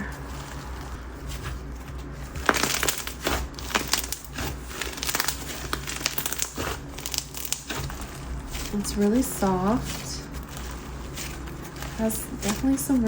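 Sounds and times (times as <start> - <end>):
slime squeezed by hand crackling: 2.4 - 12.6.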